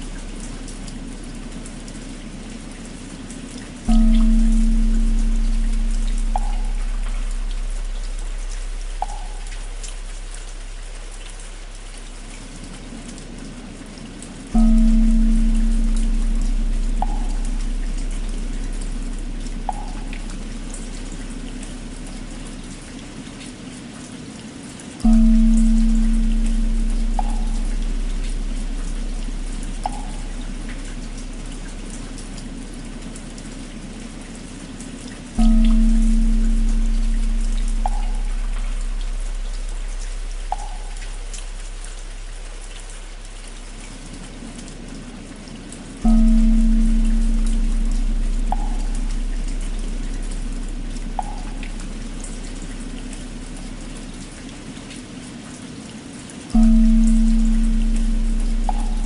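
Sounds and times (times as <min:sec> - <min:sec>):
steady rain falling: 0:00.0 - 0:59.0
water drips: 0:00.0 - 0:59.0
struck bell humming: 0:03.9 - 0:10.8, 0:14.6 - 0:22.6, 0:25.0 - 0:34.0, 0:35.4 - 0:42.4, 0:46.0 - 0:54.2, 0:56.6 - 0:59.0.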